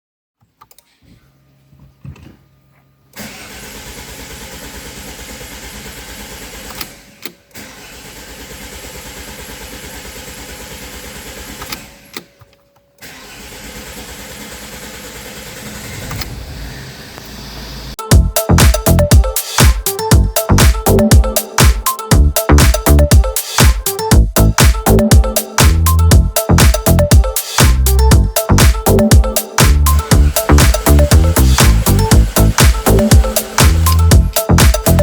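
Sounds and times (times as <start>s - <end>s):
diesel engine cranking on starter: 3.2s - 12.3s, 13.0s - 18.0s, 29.8s - 35.0s
music: 18.0s - 35.0s.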